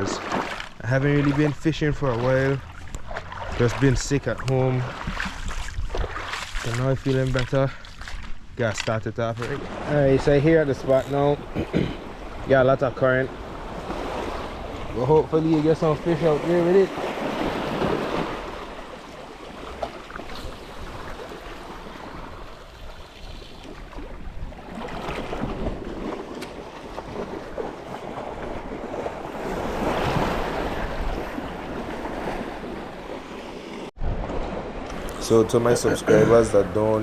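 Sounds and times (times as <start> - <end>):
sea waves washing in: 11.4 - 37.0.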